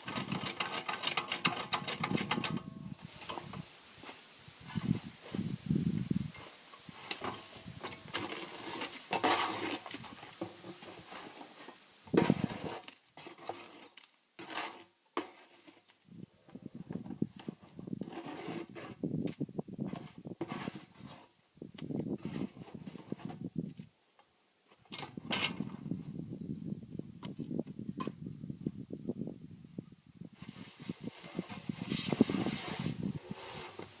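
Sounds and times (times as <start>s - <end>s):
tools scraping on concrete block: 6.4s - 15.9s, 17.5s - 19.0s, 19.8s - 21.4s, 22.2s - 23.4s, 30.8s - 34.0s.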